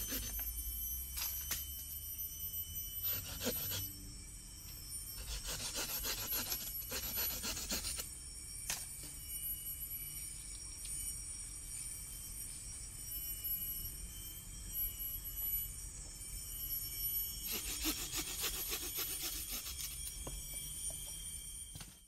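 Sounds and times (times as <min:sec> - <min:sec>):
wood being scraped by hand: 0:00.0 - 0:00.4, 0:03.0 - 0:03.9, 0:05.2 - 0:08.0, 0:17.5 - 0:20.0.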